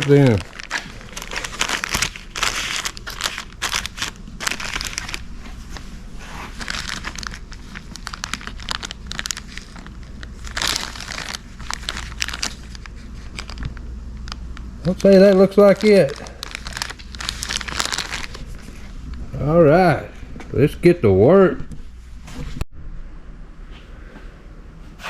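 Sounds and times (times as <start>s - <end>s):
packaging torn and crinkled: 0.0s - 5.3s, 6.4s - 19.2s.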